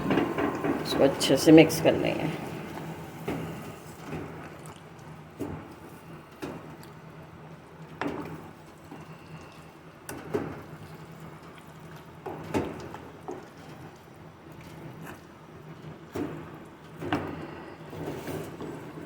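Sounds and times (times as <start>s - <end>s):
frying hiss: 0.0s - 4.5s.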